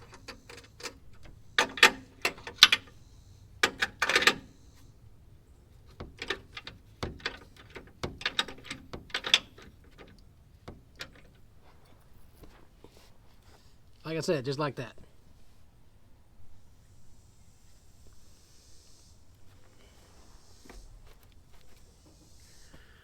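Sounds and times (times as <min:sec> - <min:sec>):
tools clicking on metal parts: 0:00.0 - 0:03.0, 0:03.6 - 0:04.6, 0:05.9 - 0:11.4.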